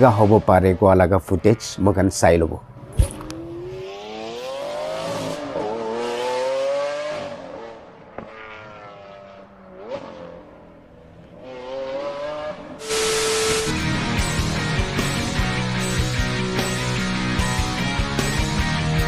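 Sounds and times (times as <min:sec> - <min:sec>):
car engines accelerating hard: 0:02.8 - 0:13.7.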